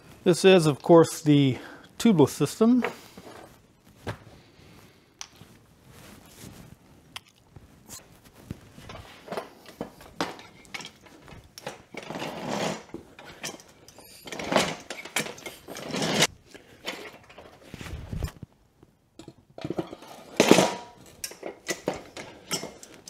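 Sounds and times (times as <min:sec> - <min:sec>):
rubber scraping against rim: 0:12.0 - 0:13.0.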